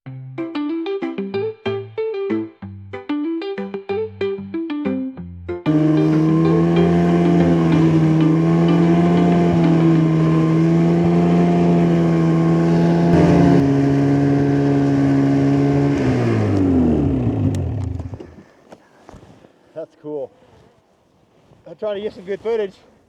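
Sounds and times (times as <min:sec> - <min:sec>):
snowmobile engine running: 0:05.7 - 0:18.4.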